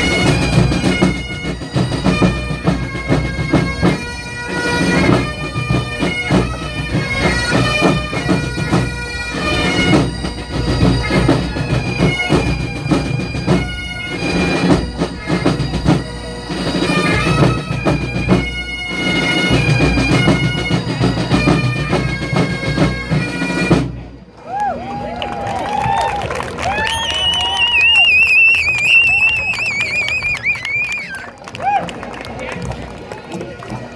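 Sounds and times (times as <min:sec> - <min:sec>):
snare and bass drums beating: 0:00.0 - 0:04.2, 0:04.8 - 0:24.0
bagpipes with drones: 0:00.0 - 0:24.1, 0:33.2 - 0:33.9.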